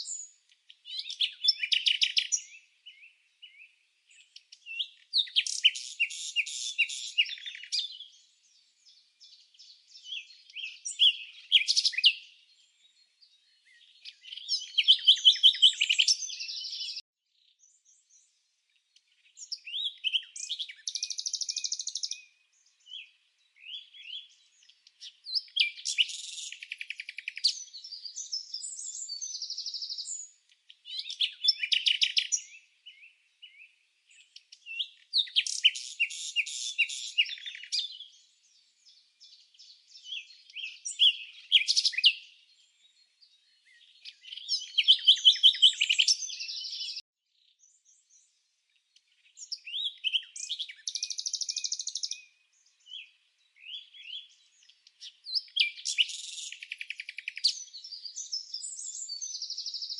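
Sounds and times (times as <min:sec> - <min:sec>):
birds chirping and singing: 0:00.0 - 0:59.9.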